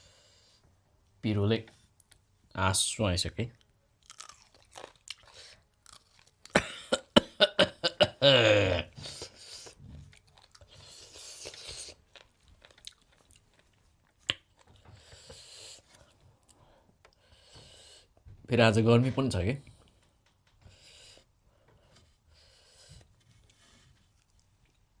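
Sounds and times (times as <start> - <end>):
crunching and chewing food: 3.5 - 6.6, 9.0 - 17.2, 22.8 - 25.0
person groaning: 7.4 - 9.0.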